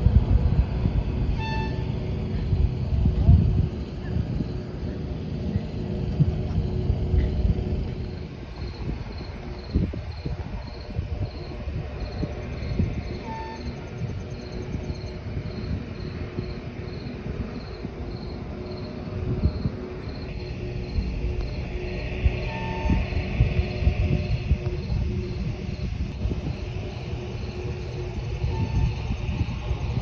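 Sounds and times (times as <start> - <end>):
low uneven rumble: 0.0 - 30.0
cricket chirping: 8.0 - 30.0.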